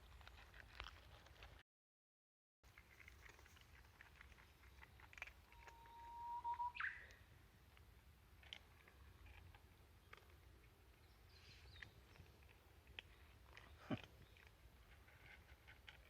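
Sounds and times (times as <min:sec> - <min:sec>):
bird whistled call: 0:05.6 - 0:07.2.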